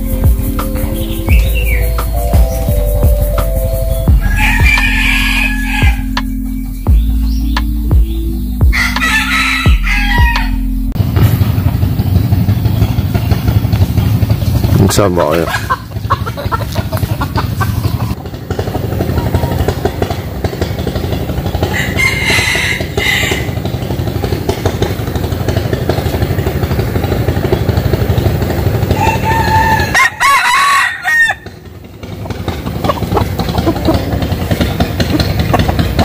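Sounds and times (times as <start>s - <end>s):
steady low rumble: 0.0s - 9.0s
roosters crowing: 4.1s - 7.2s, 8.6s - 10.8s, 15.0s - 18.2s, 18.8s - 20.6s, 21.2s - 25.6s, 28.4s - 36.0s.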